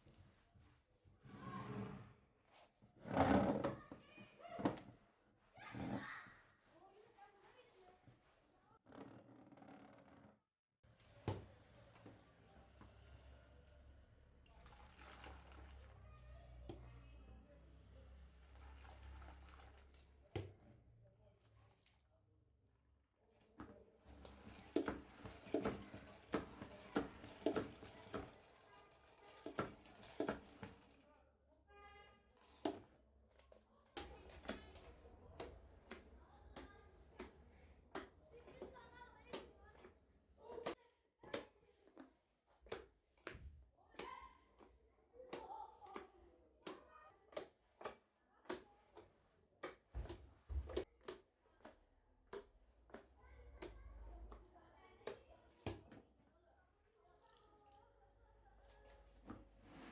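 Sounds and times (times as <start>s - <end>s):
light household knocks and clatters: 24.1s - 31.0s, 49.6s - 51.2s.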